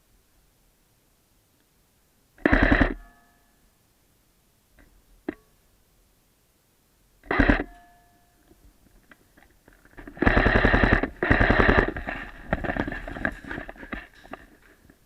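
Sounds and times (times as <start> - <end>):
airsoft gun bursts: 2.4 - 3.0, 7.2 - 7.8, 10.1 - 12.9.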